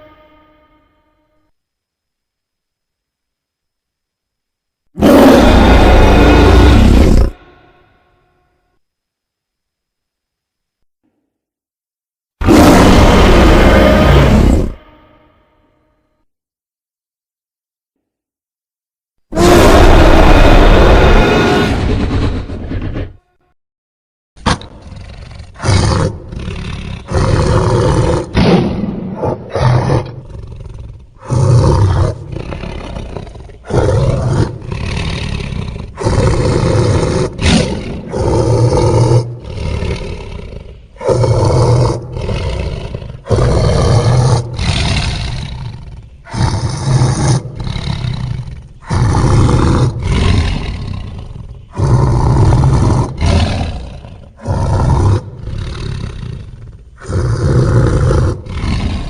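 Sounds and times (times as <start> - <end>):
loud dinosaur roars: 5.0 - 7.4, 12.4 - 14.8, 19.3 - 23.2, 24.5 - 59.0.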